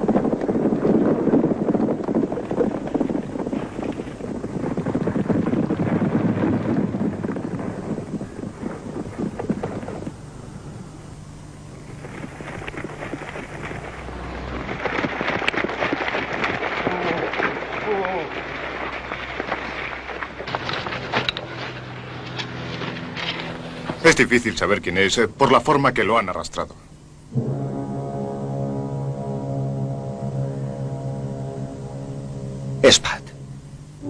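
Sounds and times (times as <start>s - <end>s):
horses galloping: 0.0s - 25.8s.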